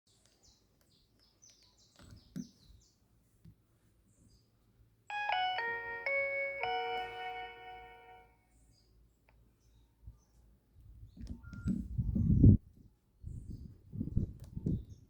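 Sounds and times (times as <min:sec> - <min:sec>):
phone polyphonic ringtone: 0:05.1 - 0:08.2.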